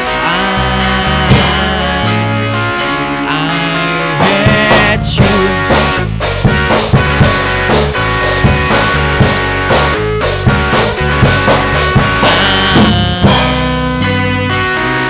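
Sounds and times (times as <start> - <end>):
drum kit hits: 0.0 - 15.0
sustained guitar notes: 0.0 - 15.0
drum fill: 4.2 - 13.9.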